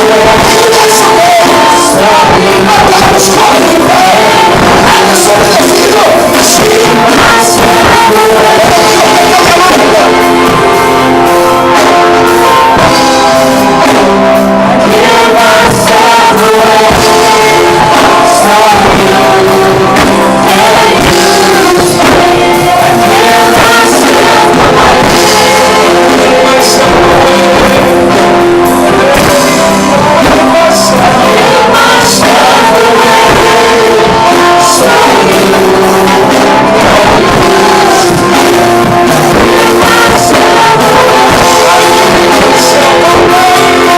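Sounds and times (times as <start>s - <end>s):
band with guitar: 0.0s - 43.9s
person singing: 0.0s - 43.9s.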